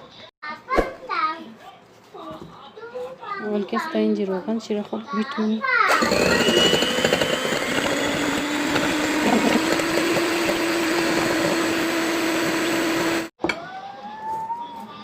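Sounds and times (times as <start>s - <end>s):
electric hand mixer running: 5.9s - 13.4s.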